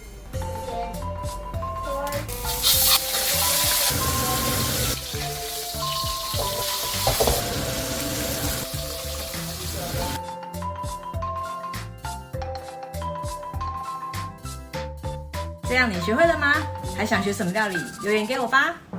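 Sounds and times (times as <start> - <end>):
background music: 0.0 - 18.9
fish sizzling in hot oil: 2.3 - 10.2.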